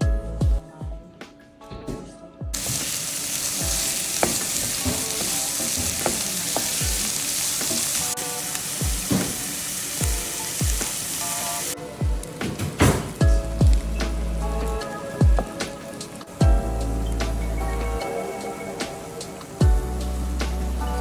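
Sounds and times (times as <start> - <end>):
background music beat: 0.0 - 21.0
food sizzling in a pan: 2.6 - 12.4.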